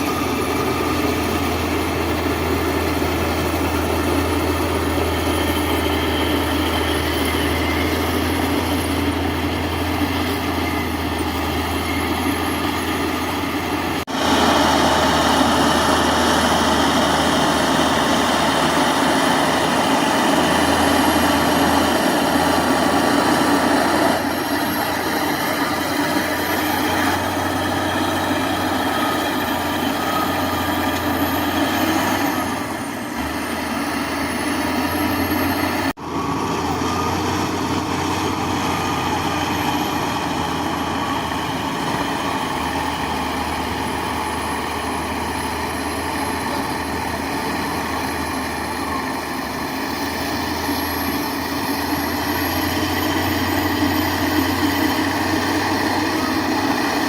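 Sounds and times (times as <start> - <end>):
heavy machinery engine running: 0.0 - 57.0.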